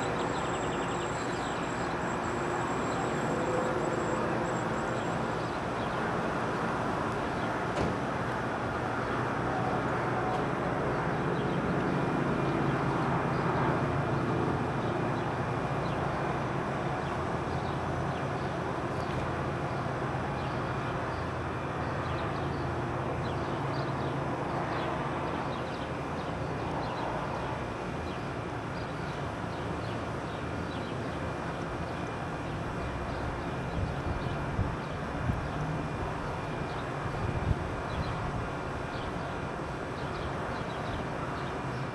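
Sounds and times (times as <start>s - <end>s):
strong sandstorm wind blowing: 33.7s - 39.6s.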